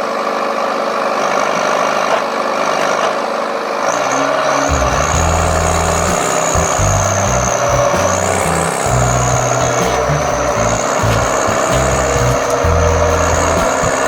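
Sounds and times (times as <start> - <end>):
truck engine and road noise: 0.0 - 14.0
thin high whine: 3.7 - 14.0
deep low throb: 4.7 - 14.0.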